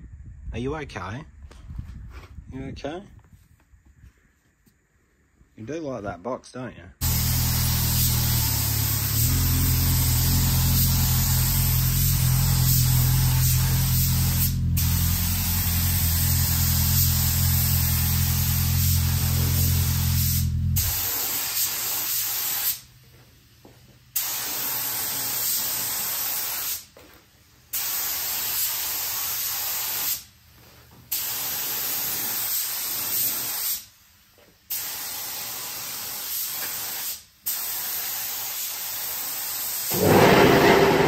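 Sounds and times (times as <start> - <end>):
hissing spray bursts: 7.0 - 22.9, 24.1 - 26.9, 27.7 - 30.3, 31.1 - 34.0, 34.7 - 41.0.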